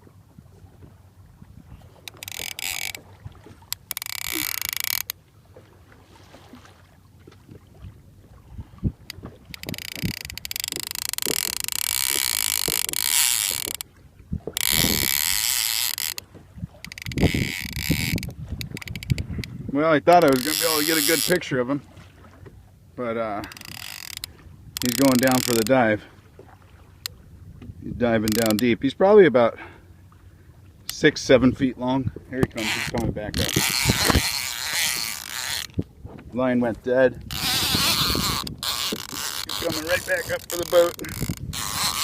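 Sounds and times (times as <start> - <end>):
fishing reel drag buzzing: 2.0 - 5.2, 9.0 - 13.9, 14.5 - 21.5, 23.3 - 26.0, 28.0 - 28.8, 32.5 - 35.9, 37.2 - 42.0.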